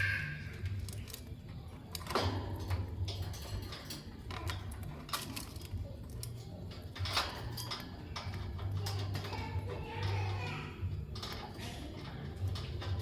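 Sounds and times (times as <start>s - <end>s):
lovebirds chirping and clicking: 0.0s - 13.0s.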